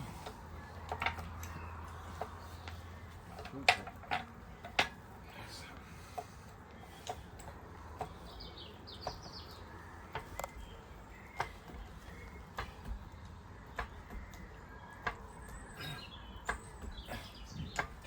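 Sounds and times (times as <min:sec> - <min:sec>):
bird chirping: 0:05.3 - 0:18.0.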